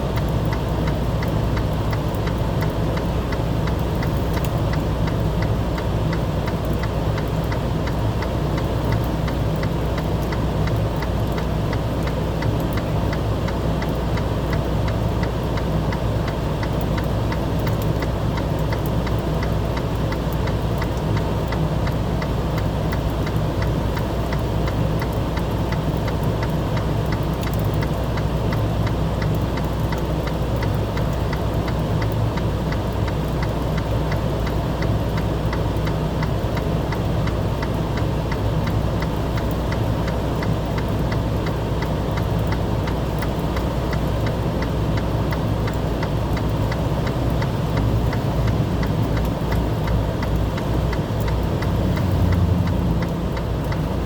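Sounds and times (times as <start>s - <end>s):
vehicle engine humming: 0.0s - 54.0s
fast even ticking: 27.4s - 54.0s.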